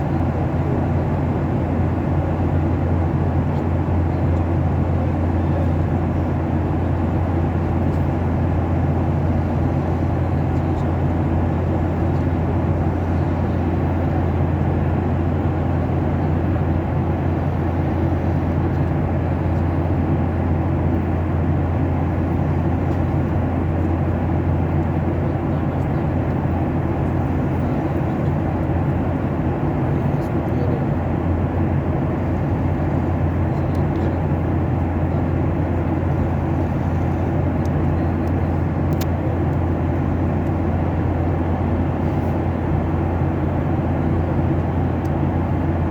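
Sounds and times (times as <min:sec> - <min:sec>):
aeroplane cabin drone: 0:00.0 - 0:45.9.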